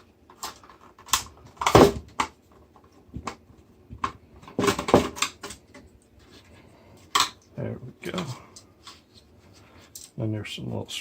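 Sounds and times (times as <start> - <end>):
screwdriver clicks and clattering parts: 0.0 - 3.4, 4.0 - 5.9, 7.0 - 7.5, 9.8 - 10.2.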